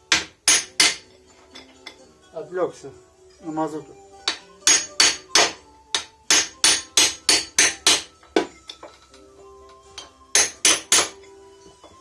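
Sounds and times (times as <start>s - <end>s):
hammer striking metal: 0.0s - 1.2s, 4.2s - 9.0s, 9.9s - 11.3s.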